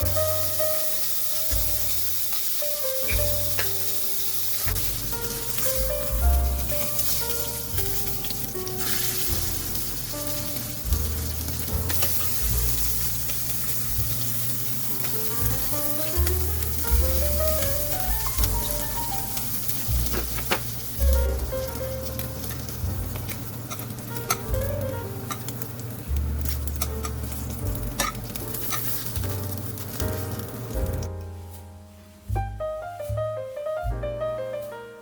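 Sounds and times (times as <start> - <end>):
food sizzling in a frying pan: 0.0 - 31.1.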